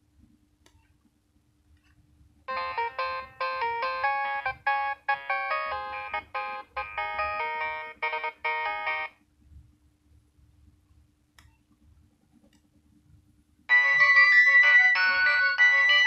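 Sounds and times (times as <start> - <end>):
electronic phone ringtone: 2.5 - 9.1, 13.7 - 16.0.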